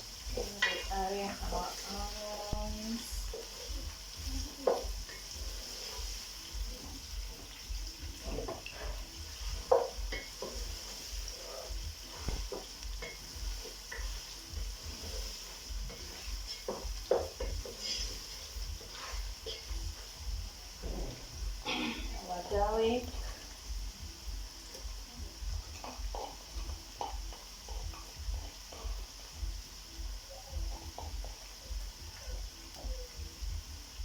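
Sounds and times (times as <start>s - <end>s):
meat and onions sizzling: 0.0s - 34.0s
spoon knocking against pot: 9.5s - 10.8s.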